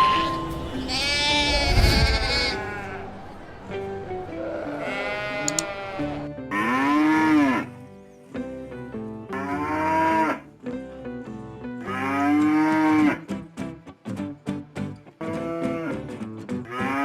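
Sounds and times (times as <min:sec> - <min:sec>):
soft background music: 0:00.0 - 0:17.0
cattle mooing: 0:00.4 - 0:03.2, 0:04.3 - 0:07.8, 0:09.3 - 0:10.5, 0:11.8 - 0:13.2, 0:16.7 - 0:17.0.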